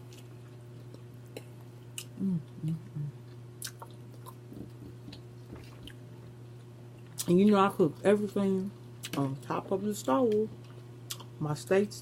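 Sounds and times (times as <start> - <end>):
chewing with wet mouth clicks: 0.0 - 7.4, 10.6 - 11.4
steady low hum: 0.0 - 12.0
person humming mm: 2.0 - 3.2.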